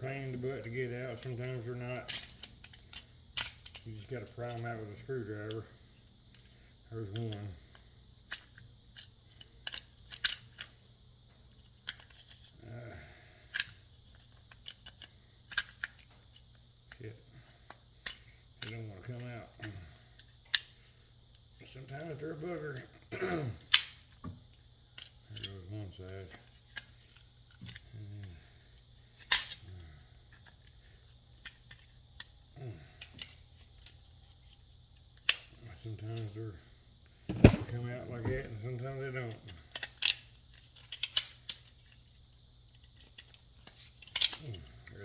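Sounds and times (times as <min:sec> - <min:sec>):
person grunting: 0:23.1 - 0:23.6
metal clicks and snaps on plastic: 0:29.2 - 0:29.6, 0:39.5 - 0:41.8, 0:42.8 - 0:44.6.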